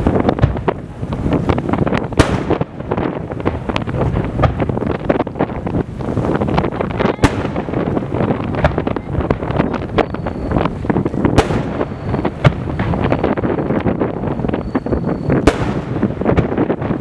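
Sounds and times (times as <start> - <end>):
sharp single firework bangs: 0.0 - 5.2, 7.0 - 13.1, 15.3 - 17.0
firework shells bursting: 0.0 - 17.0.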